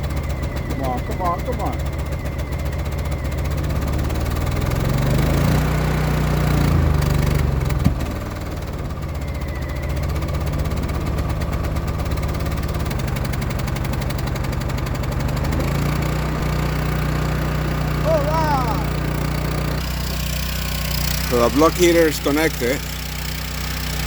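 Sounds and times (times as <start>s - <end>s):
generator engine running: 0.0s - 24.0s.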